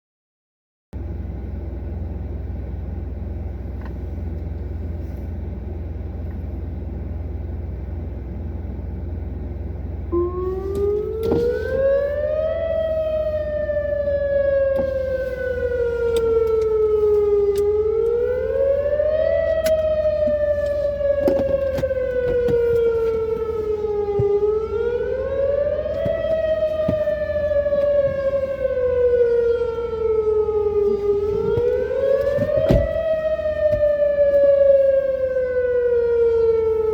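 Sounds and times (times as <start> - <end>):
warning siren wailing: 9.8 - 36.9
low rumble: 11.8 - 36.9.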